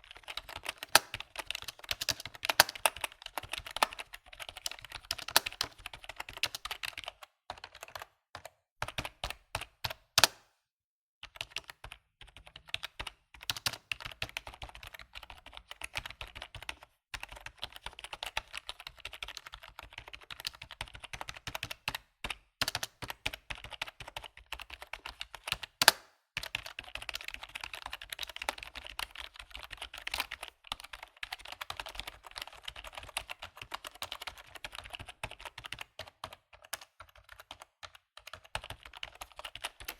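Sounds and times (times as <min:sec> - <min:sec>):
computer keyboard typing: 0:00.0 - 0:10.5, 0:11.2 - 0:39.9.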